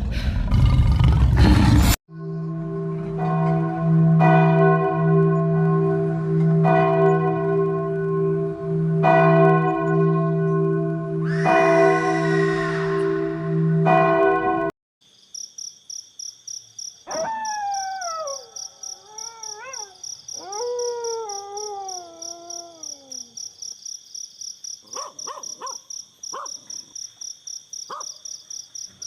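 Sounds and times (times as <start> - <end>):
church bell ringing: 2.2 - 12.2, 12.9 - 14.7
wolf howling: 11.2 - 13.4, 17.1 - 23.4
crickets chirping: 15.0 - 29.0.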